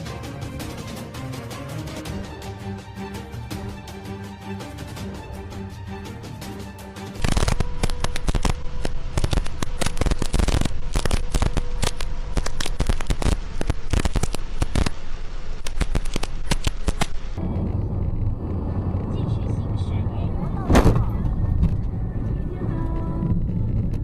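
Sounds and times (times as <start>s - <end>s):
crackling pops: 7.2s - 18.6s.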